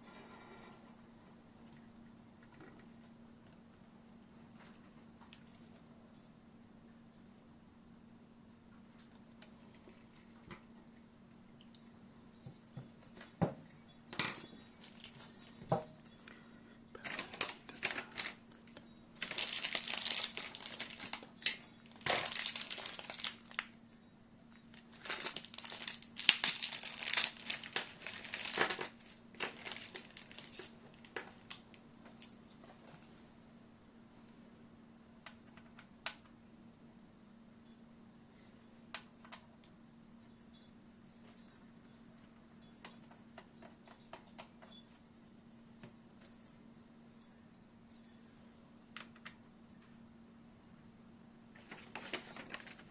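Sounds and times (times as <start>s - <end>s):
packaging crinkling: 17.0s - 18.4s, 19.2s - 23.8s, 24.8s - 32.4s, 51.6s - 52.9s.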